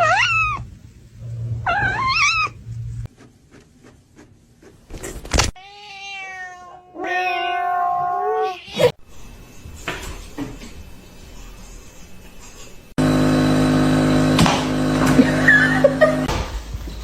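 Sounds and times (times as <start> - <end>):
cat meowing: 0.0 - 0.6, 1.6 - 2.6, 5.6 - 8.9
cat yowling: 0.0 - 0.6, 1.6 - 2.6, 5.6 - 9.0.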